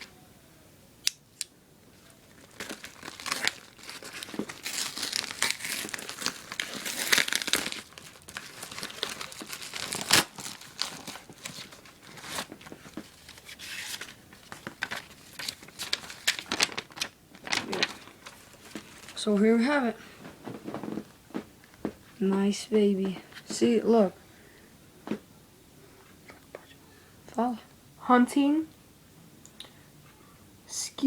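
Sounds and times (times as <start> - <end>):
packaging crinkling and tearing: 1.9 - 19.2.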